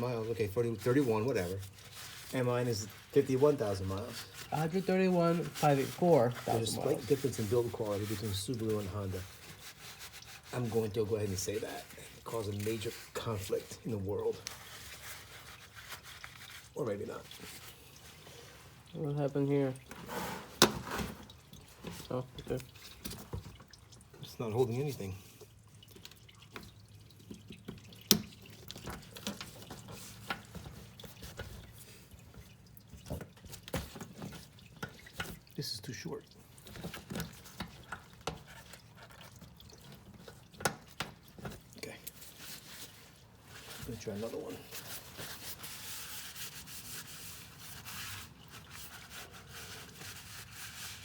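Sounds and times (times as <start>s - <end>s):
tool rubbing and scraping: 19.9s - 21.2s
oil dripping into a pan: 21.2s - 42.2s.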